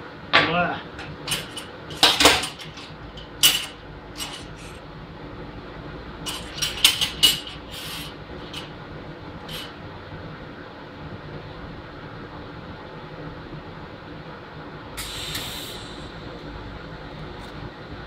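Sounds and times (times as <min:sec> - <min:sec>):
low background hum: 0:00.0 - 0:18.0
steel parts clinking on metal: 0:01.0 - 0:04.8, 0:06.3 - 0:08.7, 0:09.5 - 0:09.7.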